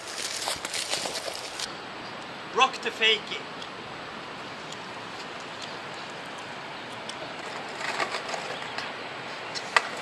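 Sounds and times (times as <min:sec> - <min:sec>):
skateboard wheels rolling: 0:07.3 - 0:10.0
skateboard clicks and clacks: 0:07.4 - 0:08.9, 0:09.6 - 0:10.0.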